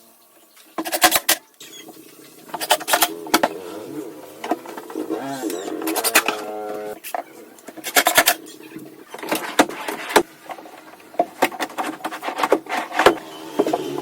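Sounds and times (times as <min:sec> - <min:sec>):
wooden knocks and clunks: 0:04.4 - 0:14.0.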